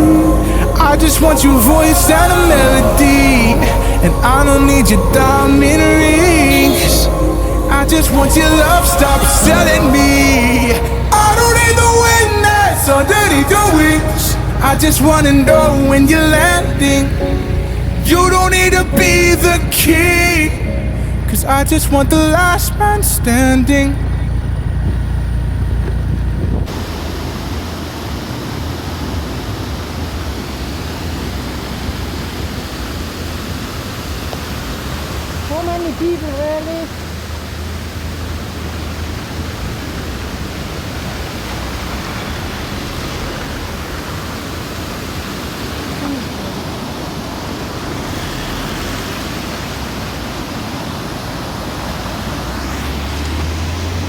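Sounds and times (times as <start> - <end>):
waterfall rushing: 0.0 - 24.1, 26.7 - 54.0
low rumble: 0.0 - 27.7
low hum: 0.0 - 31.4.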